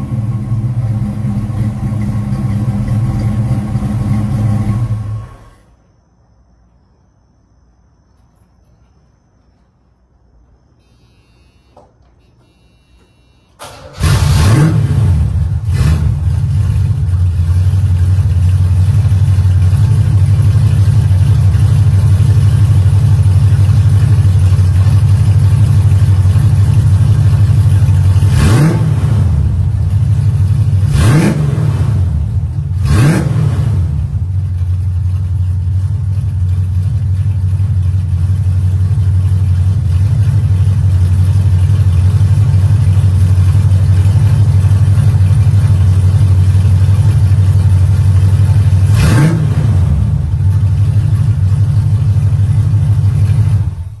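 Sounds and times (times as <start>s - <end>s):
engine revving blips: 0.0s - 5.8s, 10.8s - 18.1s, 24.2s - 34.7s, 42.8s - 54.0s
car engine starting and idling: 0.0s - 6.1s, 13.1s - 54.0s.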